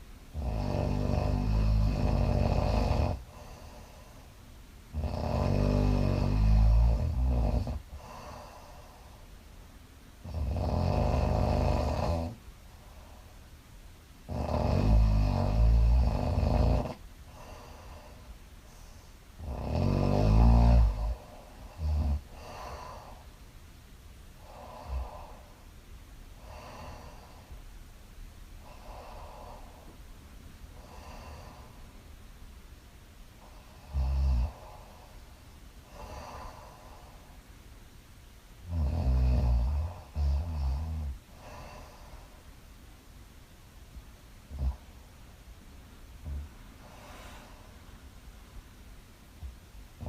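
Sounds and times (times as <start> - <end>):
quiet breaths: 0.0 - 50.0
woman snoring: 0.3 - 3.9, 4.9 - 9.0, 10.2 - 12.4, 14.3 - 18.2, 19.4 - 23.2, 24.4 - 25.6, 33.4 - 35.2, 38.7 - 42.0.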